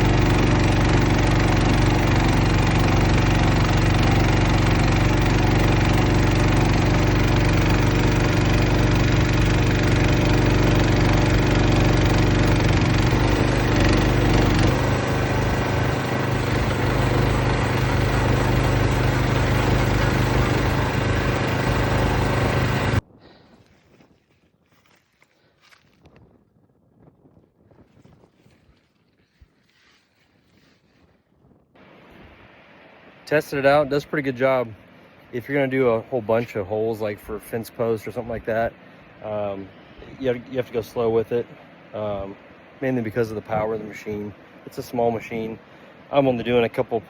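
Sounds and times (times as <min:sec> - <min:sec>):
excavator engine running: 0:00.0 - 0:23.1.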